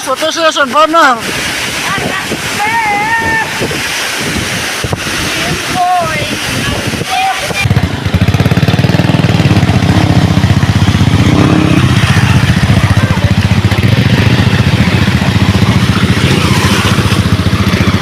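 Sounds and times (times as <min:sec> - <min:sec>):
motorcycle engine running: 0:07.6 - 0:18.0.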